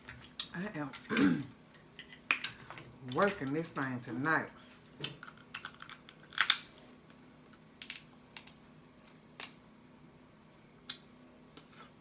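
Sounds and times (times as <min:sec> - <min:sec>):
faint steady hum: 0:00.0 - 0:12.0
shell cracking by hand: 0:05.1 - 0:06.7.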